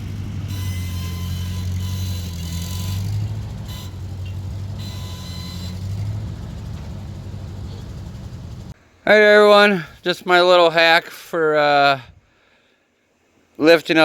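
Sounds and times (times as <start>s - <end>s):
high mechanical whine: 0.0s - 8.8s
tractor engine running: 0.0s - 8.8s.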